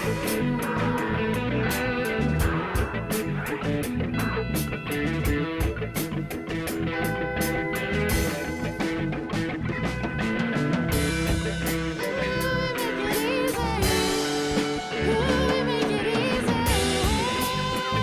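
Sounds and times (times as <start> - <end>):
jazz hip-hop band playing: 0.0 - 18.0.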